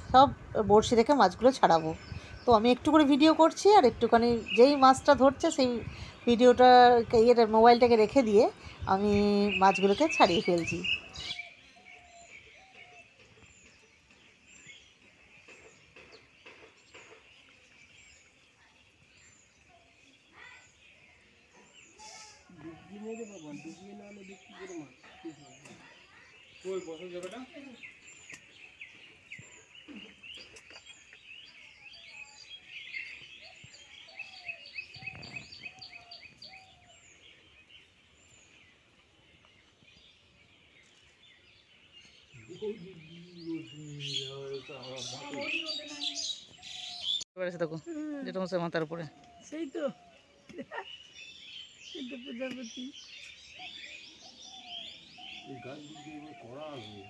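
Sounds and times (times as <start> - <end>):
small birds chirping: 0.0 - 57.0
lower bird call: 15.4 - 26.8, 40.8 - 47.2, 49.1 - 57.0
low whistled bird notes: 27.8 - 47.2.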